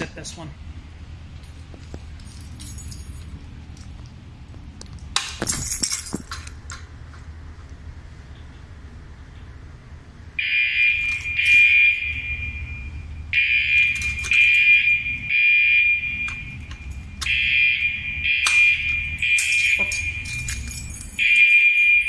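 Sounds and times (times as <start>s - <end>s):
fire alarm horns blasting: 10.4s - 22.0s.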